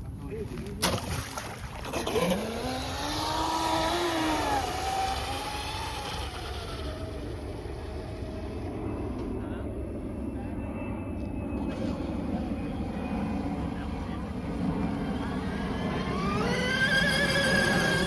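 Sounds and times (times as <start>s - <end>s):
electric boat motor whining: 1.8s - 9.3s, 11.6s - 18.0s.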